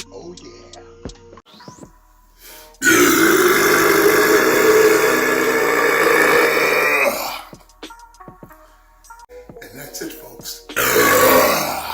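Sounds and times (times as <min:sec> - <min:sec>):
long loud burp: 0:02.8 - 0:07.5, 0:10.8 - 0:11.9.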